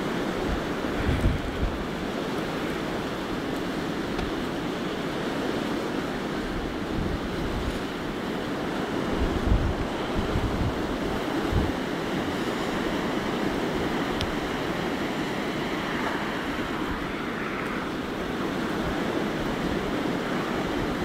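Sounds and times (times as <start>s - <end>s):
wind thumping on microphone: 0.0s - 2.1s, 9.1s - 11.8s
blizzard wind blowing: 0.0s - 21.0s.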